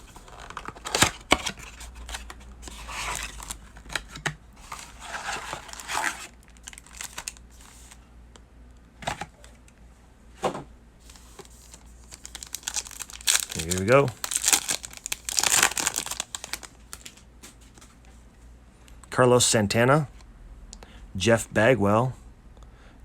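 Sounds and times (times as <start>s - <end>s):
wrapper tearing and rustling: 0.1s - 4.0s, 4.6s - 8.0s, 11.0s - 17.2s.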